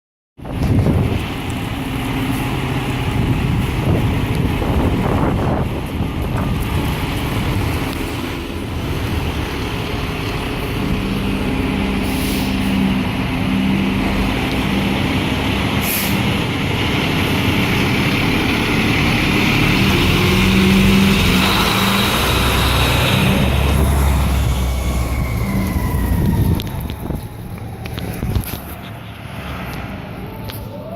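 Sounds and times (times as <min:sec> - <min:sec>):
wind buffeting microphone: 0:00.4 - 0:12.0, 0:22.1 - 0:29.3
diesel engines running: 0:00.4 - 0:30.9
air brake hisses: 0:12.0 - 0:12.8, 0:15.8 - 0:16.2.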